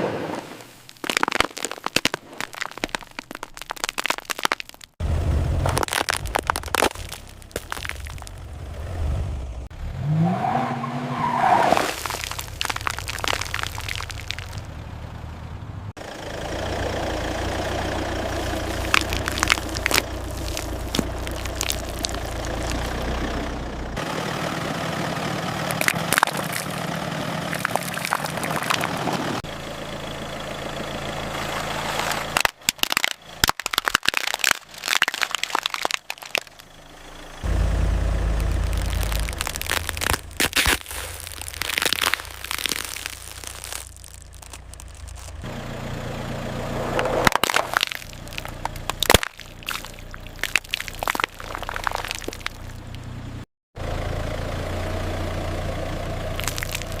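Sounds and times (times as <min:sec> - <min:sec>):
car rumble: 0:00.0 - 0:57.0
tyres crushing objects: 0:00.6 - 0:05.0, 0:05.6 - 0:08.4, 0:11.6 - 0:14.7, 0:18.3 - 0:23.1, 0:25.7 - 0:29.3, 0:32.0 - 0:36.6, 0:38.3 - 0:45.5, 0:47.0 - 0:52.9, 0:56.4 - 0:57.0.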